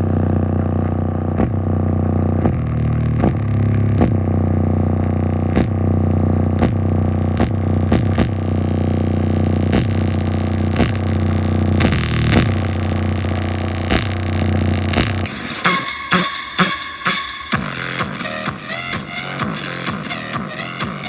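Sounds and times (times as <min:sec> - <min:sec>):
distorted low bass tone: 0:00.0 - 0:21.0
speaker pops and crackles: 0:00.5 - 0:15.3.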